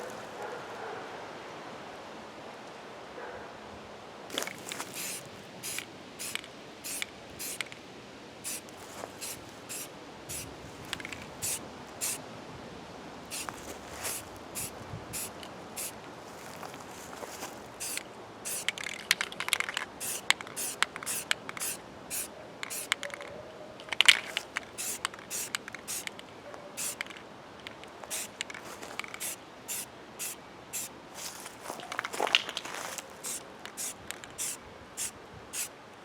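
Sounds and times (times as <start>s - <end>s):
spray paint can hissing: 4.4s - 7.8s, 8.4s - 12.2s, 13.3s - 16.0s, 17.8s - 23.0s, 24.2s - 26.2s, 26.8s - 27.1s, 28.1s - 30.9s, 33.2s - 35.7s.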